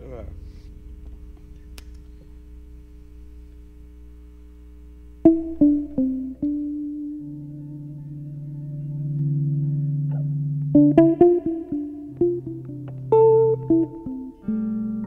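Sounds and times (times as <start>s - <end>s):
electric bass notes: 0.0s - 15.0s.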